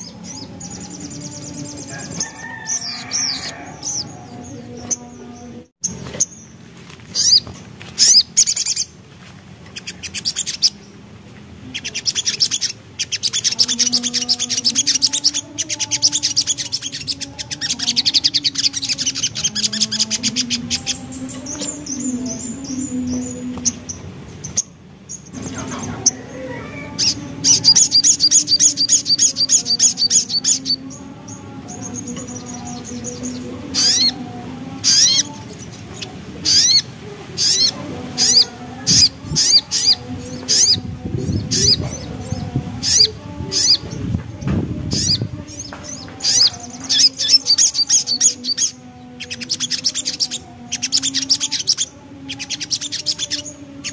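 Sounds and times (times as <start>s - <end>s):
bird chattering trills: 5.8s - 9.0s, 11.7s - 44.0s, 44.8s - 53.9s.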